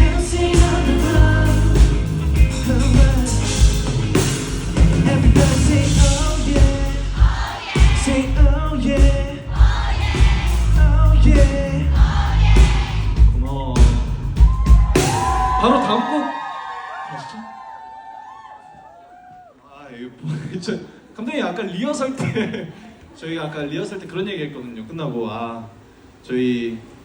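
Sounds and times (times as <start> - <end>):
man singing: 0.0 - 4.2, 4.8 - 7.3, 8.0 - 9.6, 10.7 - 12.1
live band playing pop-rock: 0.0 - 15.6
steady drum beat: 0.0 - 15.7.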